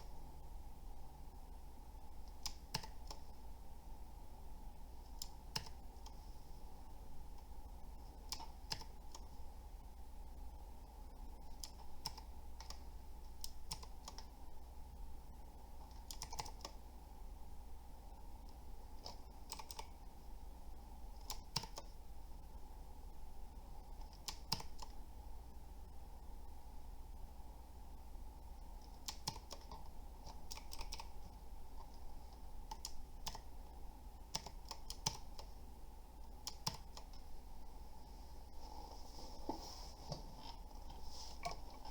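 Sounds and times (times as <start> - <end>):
mechanical keyboard keystrokes: 8.3 - 9.2, 19.0 - 19.9, 21.2 - 21.8, 24.1 - 24.9, 29.0 - 31.1, 34.3 - 35.5.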